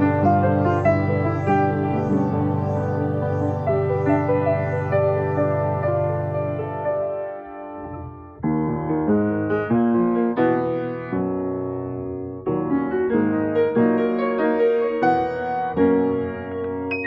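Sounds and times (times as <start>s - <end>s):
slow piano chords: 0.0s - 8.4s.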